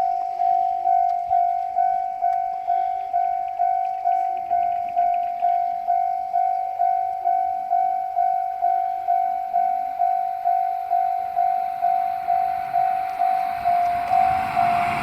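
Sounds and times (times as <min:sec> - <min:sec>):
level-crossing warning bell ringing: 0:00.0 - 0:15.0
rush of noise: 0:12.1 - 0:15.0.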